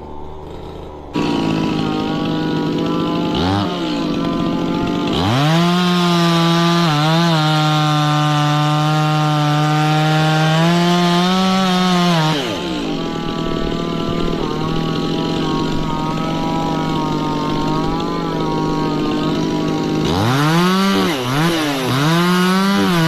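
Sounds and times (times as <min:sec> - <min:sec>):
chainsaw cutting wood: 0:00.0 - 0:23.0.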